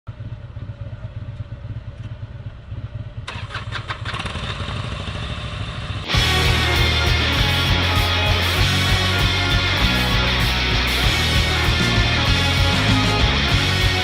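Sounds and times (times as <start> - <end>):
vehicle engine running: 0.1 - 14.0
loud guitar music: 6.0 - 14.0.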